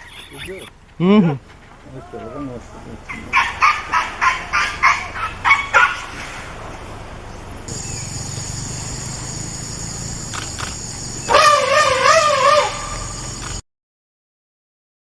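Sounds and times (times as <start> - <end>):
wavering animal call: 0.0 - 6.6, 11.2 - 13.6
animal calls: 0.0 - 13.6
steady hiss: 6.0 - 11.8.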